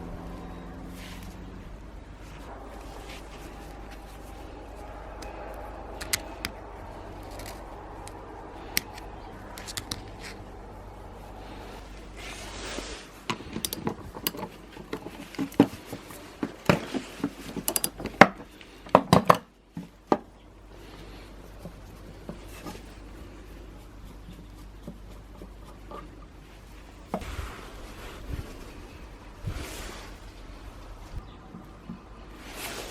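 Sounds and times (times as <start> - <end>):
low steady hum: 0.0 - 32.9
metal parts clinking and knocking: 17.5 - 18.3.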